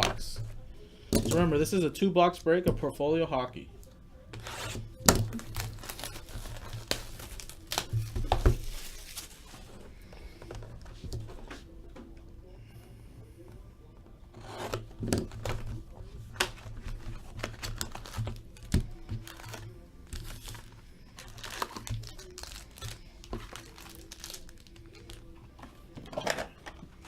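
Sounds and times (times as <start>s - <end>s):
plastic wrapping torn and crinkled: 4.4s - 9.7s, 14.7s - 25.4s.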